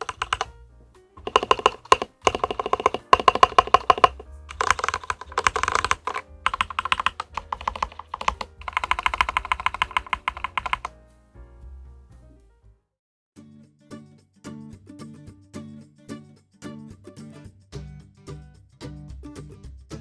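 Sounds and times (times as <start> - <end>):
mechanical keyboard typing: 0.0 - 0.5, 1.2 - 10.9
background music: 0.0 - 12.8.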